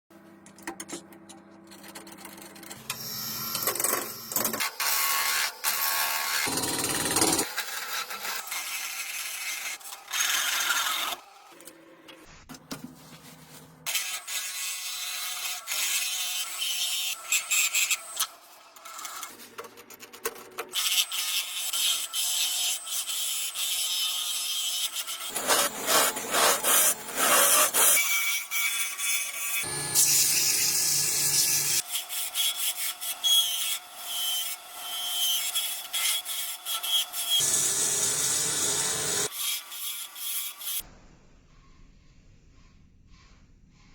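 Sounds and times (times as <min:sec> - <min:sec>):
tools rasping on wood: 0:25.3 - 0:28.0.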